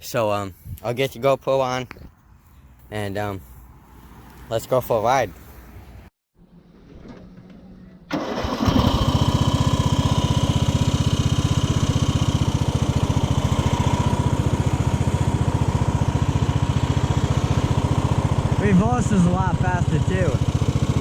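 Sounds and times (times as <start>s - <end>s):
riding mower engine running: 8.1s - 21.0s.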